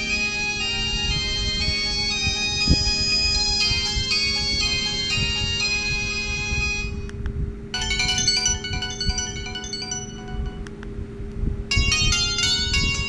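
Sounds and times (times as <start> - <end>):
mobile phone ringtones: 0.0 - 7.1, 7.8 - 10.8, 11.7 - 13.0
steady low hum: 0.0 - 13.0.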